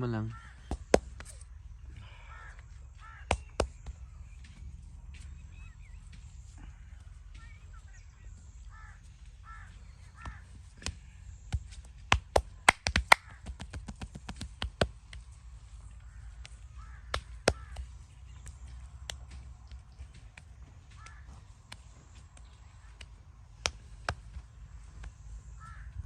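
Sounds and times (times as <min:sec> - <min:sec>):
crows cawing: 0:00.2 - 0:01.1, 0:01.7 - 0:04.0, 0:08.4 - 0:11.1, 0:13.1 - 0:13.6, 0:15.6 - 0:19.4, 0:20.0 - 0:23.2, 0:25.4 - 0:26.0
hands slapping body: 0:00.7 - 0:01.4, 0:03.3 - 0:03.9, 0:11.6 - 0:15.3, 0:16.4 - 0:19.4, 0:20.3 - 0:24.4.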